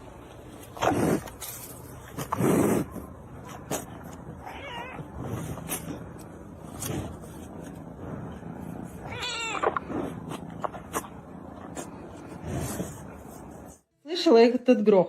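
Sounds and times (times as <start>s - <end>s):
cat meowing: 4.4s - 5.1s, 9.0s - 9.8s.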